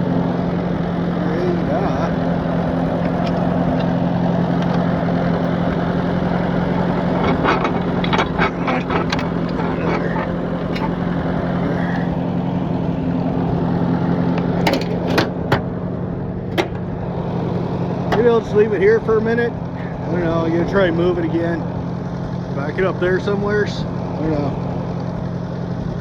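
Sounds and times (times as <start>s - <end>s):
tractor engine running: 0.0s - 26.0s
sharp clicks and knocks: 2.8s - 12.1s, 14.3s - 15.8s, 16.5s - 17.0s.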